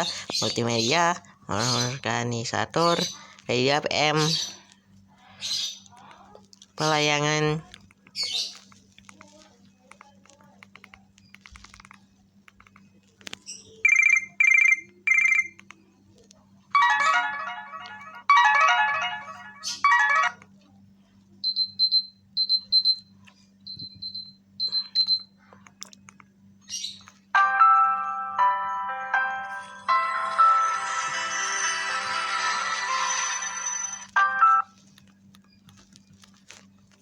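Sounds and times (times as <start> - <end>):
phone beeps: 13.8 - 15.6, 23.7 - 25.3, 33.6 - 34.8
chiming melody: 27.4 - 34.6.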